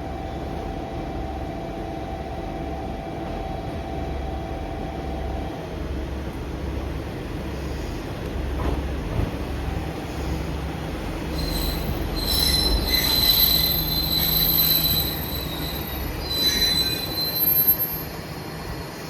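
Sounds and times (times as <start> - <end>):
diesel railcar rumble: 0.0 - 19.0
high-pitched brake squeal: 11.3 - 19.0.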